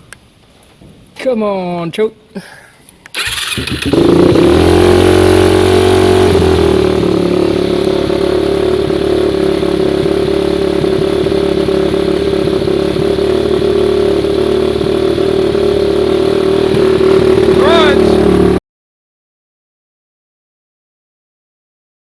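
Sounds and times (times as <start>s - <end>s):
engine idling: 3.1s - 18.6s.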